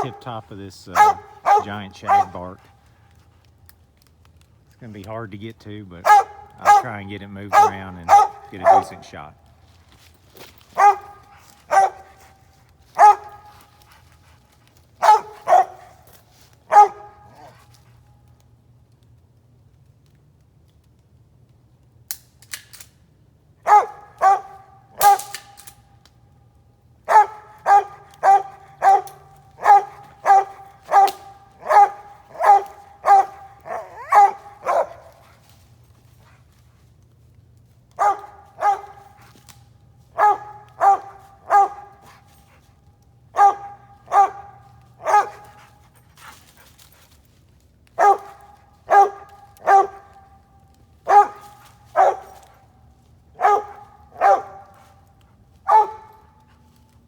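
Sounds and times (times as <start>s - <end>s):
dog barking: 0.0s - 0.2s, 0.9s - 2.8s, 6.0s - 9.0s, 10.8s - 14.0s, 15.0s - 16.0s, 16.7s - 17.7s, 23.6s - 25.3s, 27.1s - 35.4s, 38.0s - 39.4s, 40.1s - 42.6s, 43.3s - 46.4s, 48.0s - 50.4s, 51.0s - 52.6s, 53.4s - 55.0s, 55.6s - 56.6s.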